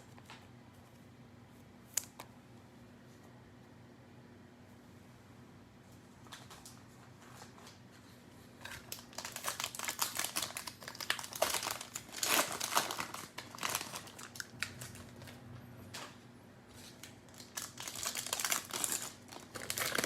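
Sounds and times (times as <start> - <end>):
plastic wrapper crackling: 8.6 - 20.0.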